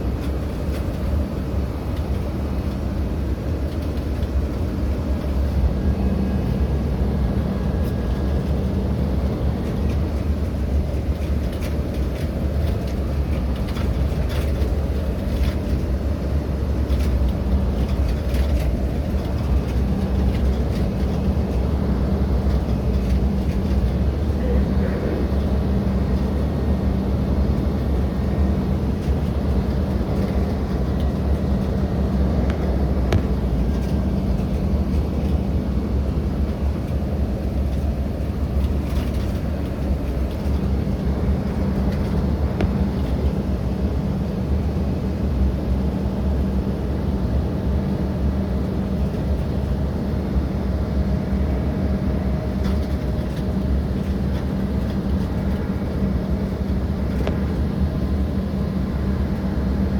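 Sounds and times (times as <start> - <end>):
constant low hum: 0.0 - 59.9
jet airliner cabin rumble: 0.0 - 59.9.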